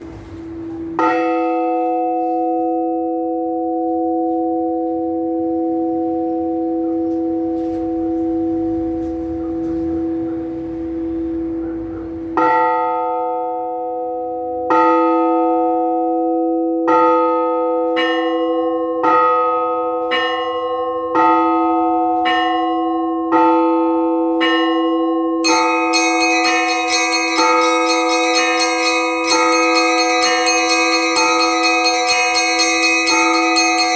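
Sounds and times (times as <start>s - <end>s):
church bell ringing: 0.8s - 33.9s
small high-pitched bells chiming: 25.4s - 33.9s.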